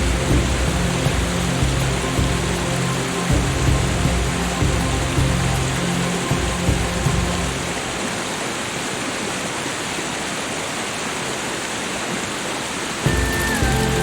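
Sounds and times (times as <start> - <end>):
background music: 0.0 - 8.6, 13.0 - 14.0
falling water hiss: 0.0 - 14.0.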